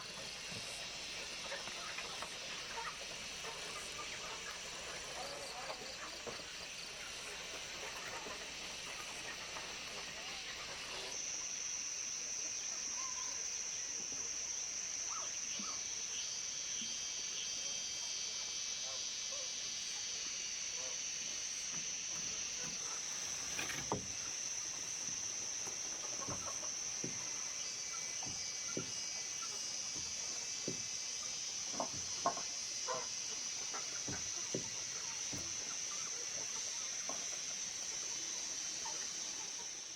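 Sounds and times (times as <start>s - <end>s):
chicken clucking: 1.2s - 11.1s, 22.2s - 39.9s.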